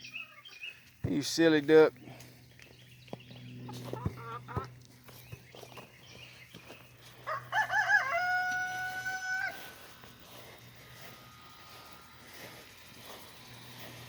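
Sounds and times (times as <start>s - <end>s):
rooster crowing: 7.2s - 10.0s.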